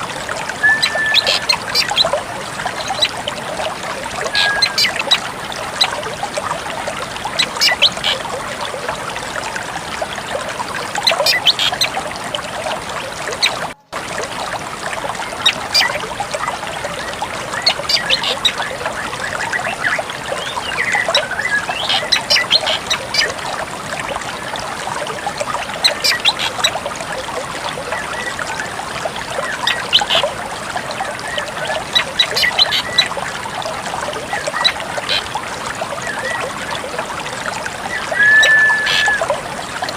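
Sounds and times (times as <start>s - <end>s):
running water trickling: 0.0s - 39.9s
drongo calls: 0.6s - 2.1s, 4.3s - 5.2s, 37.9s - 39.4s.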